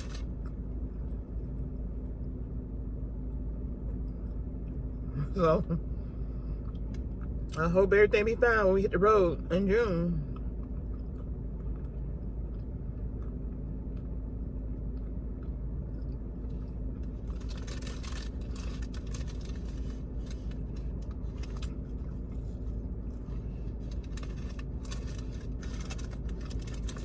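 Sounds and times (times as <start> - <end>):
car engine idling: 0.0 - 27.0
chewing: 10.2 - 27.0
food wrapper crinkling: 17.2 - 21.8, 23.8 - 27.0.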